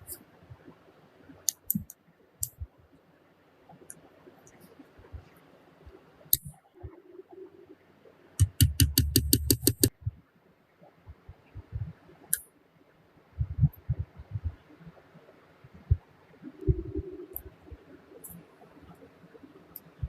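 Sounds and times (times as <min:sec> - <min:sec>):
sharp clicks: 0:01.4 - 0:02.6, 0:08.4 - 0:10.0.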